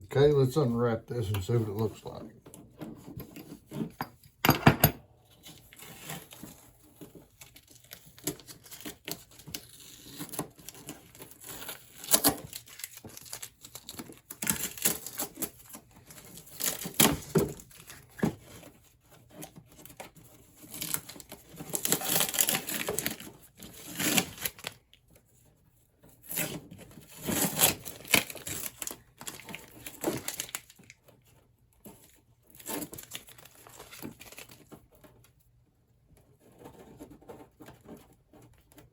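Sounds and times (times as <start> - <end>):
wrapping crinkling and tearing: 5.3 - 25.2, 26.2 - 35.3.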